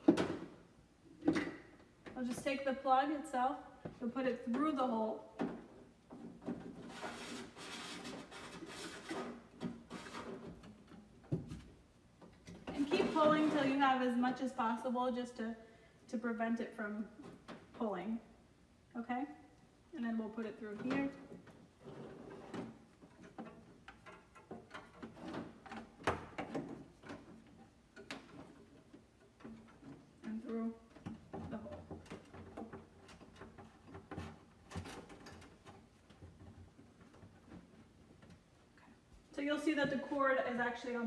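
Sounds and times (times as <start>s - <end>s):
power cord rubbing and scraping: 12.7s - 13.8s.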